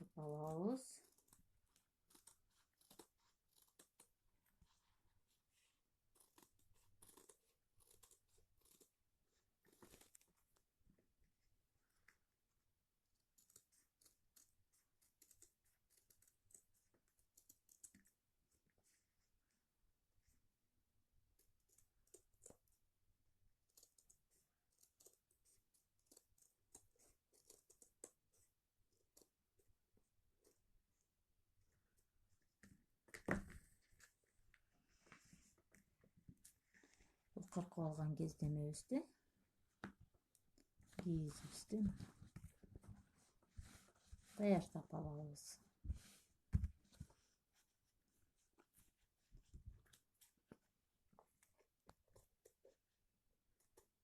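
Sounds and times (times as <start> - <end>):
scissors cutting fabric: 0.2 - 4.2, 6.1 - 9.0.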